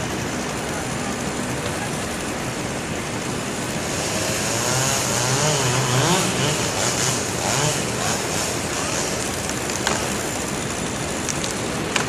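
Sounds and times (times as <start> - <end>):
motor with wavering pitch: 0.0 - 11.3
machinery engine running: 0.0 - 12.0.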